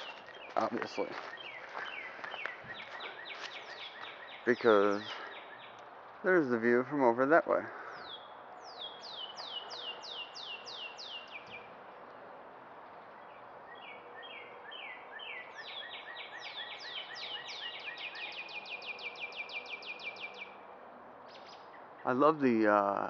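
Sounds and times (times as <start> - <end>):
faint outdoor hiss: 0.0 - 23.0
songbird whistled notes and trill: 1.3 - 4.5, 8.0 - 11.7, 13.2 - 20.6.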